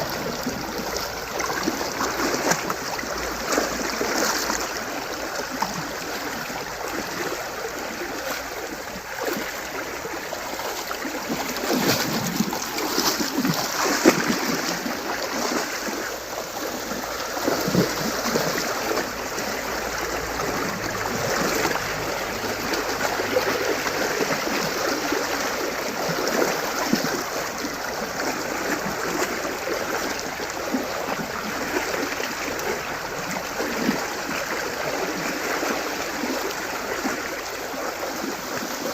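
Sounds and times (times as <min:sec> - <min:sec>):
shallow river running: 0:00.0 - 0:38.9
cattle splashing through water: 0:10.6 - 0:16.0.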